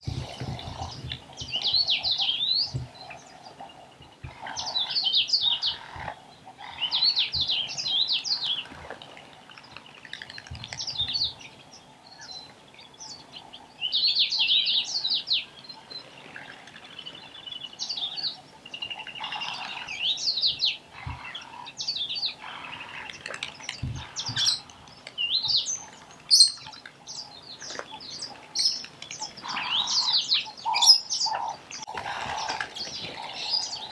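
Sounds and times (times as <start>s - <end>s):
parrots calling: 0.0s - 1.6s, 31.9s - 33.9s.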